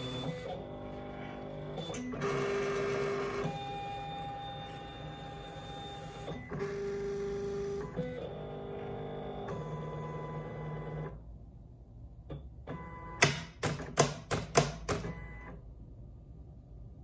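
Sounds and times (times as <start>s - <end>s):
cutting machine motor whine: 0.0s - 11.2s.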